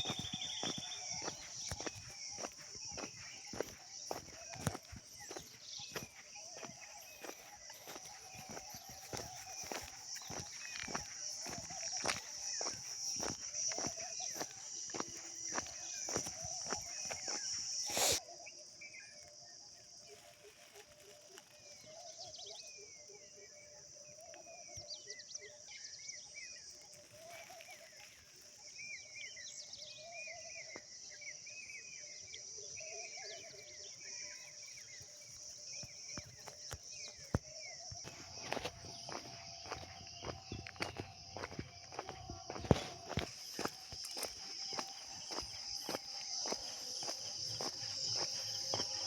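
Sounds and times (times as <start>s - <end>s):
birds chirping: 0.0s - 18.2s, 29.0s - 49.0s
footsteps on a road: 0.0s - 18.2s, 33.4s - 49.0s
high insect buzz: 0.0s - 18.2s, 38.0s - 49.0s.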